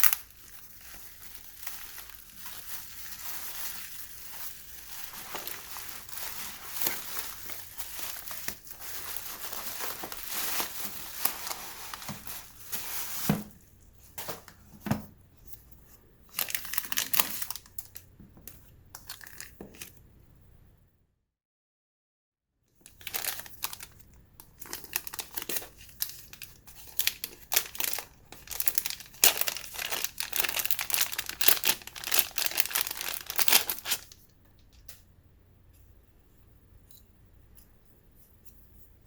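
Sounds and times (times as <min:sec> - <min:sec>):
packaging crinkling: 0:00.0 - 0:13.6, 0:16.3 - 0:18.1, 0:22.8 - 0:35.0.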